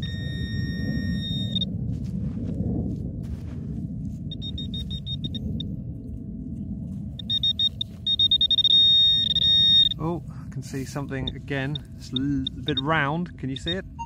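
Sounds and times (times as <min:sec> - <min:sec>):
metal detector beeping: 0:00.0 - 0:01.7, 0:04.3 - 0:05.7, 0:07.2 - 0:10.0, 0:11.2 - 0:14.0
low steady rumble: 0:00.0 - 0:14.0.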